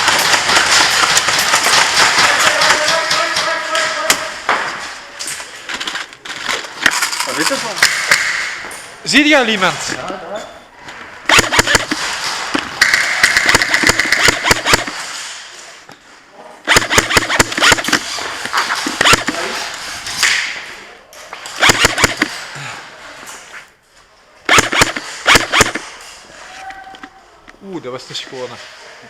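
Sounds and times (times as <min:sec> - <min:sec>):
airsoft guns firing full auto: 0:00.0 - 0:03.5, 0:11.3 - 0:15.3, 0:16.7 - 0:19.5, 0:21.5 - 0:22.4, 0:24.5 - 0:26.0.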